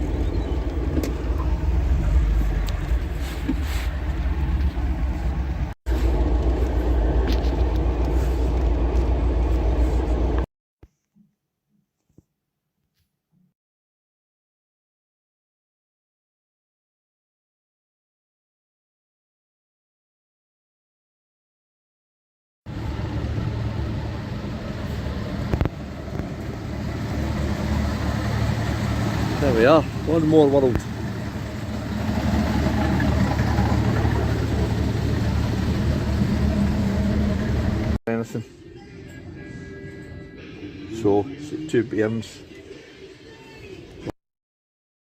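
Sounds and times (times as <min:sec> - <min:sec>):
car engine and road noise: 0:00.0 - 0:10.5, 0:22.7 - 0:38.0.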